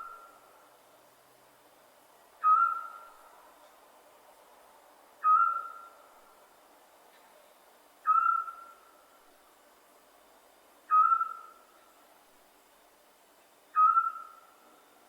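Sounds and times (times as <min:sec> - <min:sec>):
owl whistled calls: 0:02.4 - 0:03.2, 0:05.2 - 0:06.0, 0:08.0 - 0:08.9, 0:10.9 - 0:11.7, 0:13.7 - 0:14.6.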